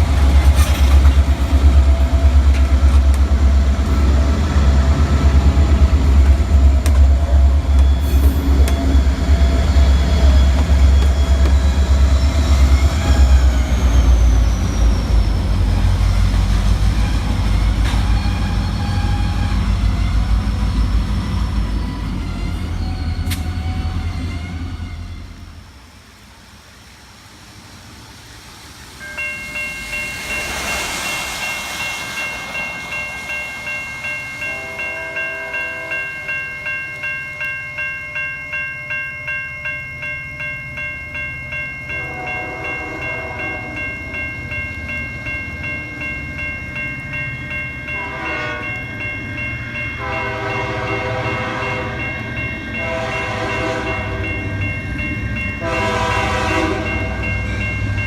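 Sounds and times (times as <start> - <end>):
locomotive bell ringing: 0.0 - 24.6, 29.0 - 58.0
train air horn blasts: 34.5 - 36.0, 42.0 - 43.8, 48.0 - 48.8, 50.0 - 52.0, 52.8 - 54.2, 55.6 - 57.2.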